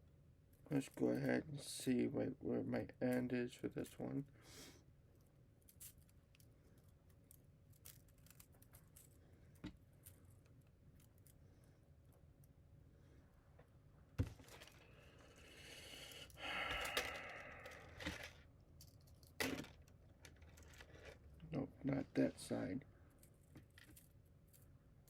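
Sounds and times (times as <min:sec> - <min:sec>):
crinkly rustling and scraping: 0:05.1 - 0:12.3, 0:13.6 - 0:15.4, 0:17.7 - 0:24.8.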